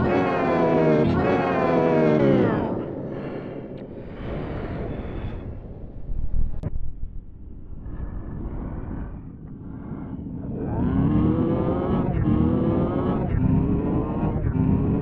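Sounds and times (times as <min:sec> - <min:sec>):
loud pitch-bending engine-like tone: 0:00.0 - 0:05.4, 0:09.0 - 0:15.0
low rumble: 0:00.0 - 0:15.0.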